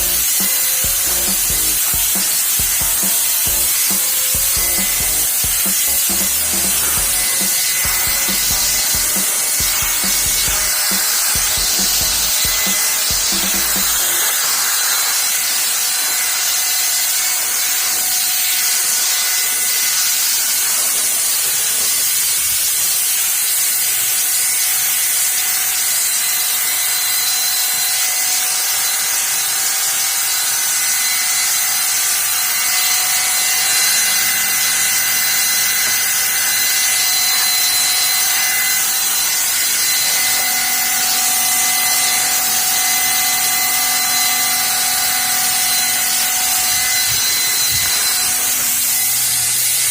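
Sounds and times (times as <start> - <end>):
pressure washer water jet spraying: 0.0 - 16.0
high machine tones: 0.0 - 16.5, 30.8 - 49.9.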